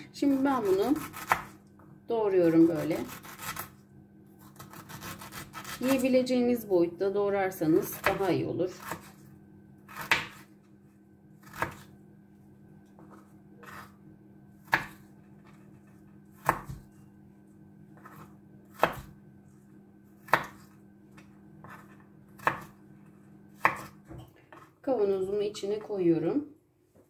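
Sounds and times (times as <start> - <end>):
knife chopping ginger: 0.2 - 1.6, 2.4 - 3.8, 4.4 - 6.1, 7.8 - 10.5, 11.4 - 11.9, 13.0 - 14.0, 14.6 - 16.9, 17.9 - 19.2, 20.2 - 22.8, 23.6 - 24.7.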